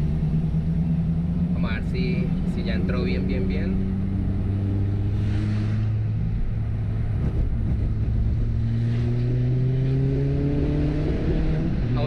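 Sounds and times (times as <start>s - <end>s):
car engine running under load: 0.0s - 8.8s.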